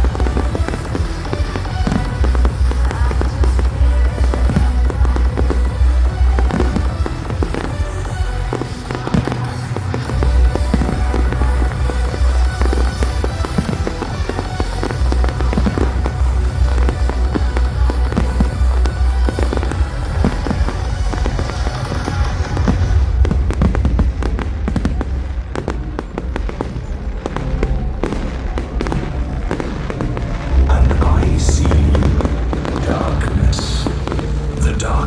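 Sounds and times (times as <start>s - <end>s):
show music with heavy bass: 0.0s - 24.3s
fireworks bursting and crackling: 0.0s - 35.0s.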